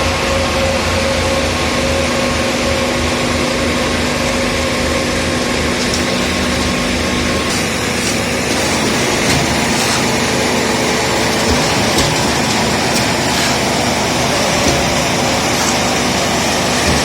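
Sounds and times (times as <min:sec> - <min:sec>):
concrete pump engine running: 0:03.9 - 0:17.0
steady machine whine: 0:04.2 - 0:17.0.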